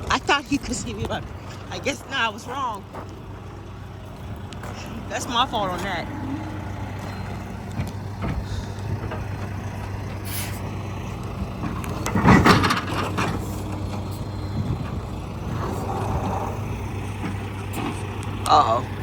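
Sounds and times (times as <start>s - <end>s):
heavy diesel engine running: 0.0s - 19.0s.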